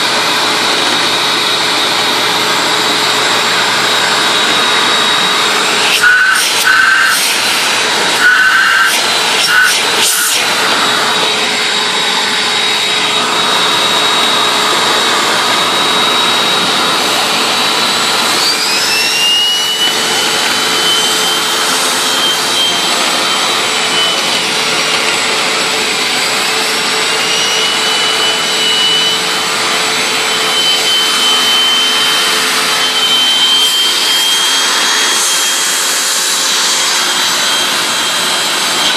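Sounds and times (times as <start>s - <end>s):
vacuum cleaner motor running: 0.0s - 38.9s
high whistle gliding: 4.5s - 10.9s, 12.8s - 24.7s, 26.7s - 38.5s.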